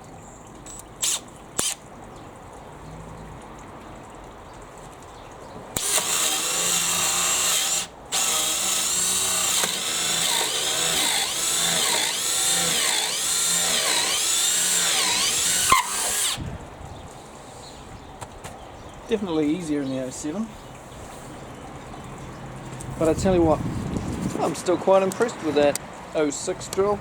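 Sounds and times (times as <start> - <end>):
hammer drill boring into wood: 1.0 - 1.8, 5.8 - 16.4.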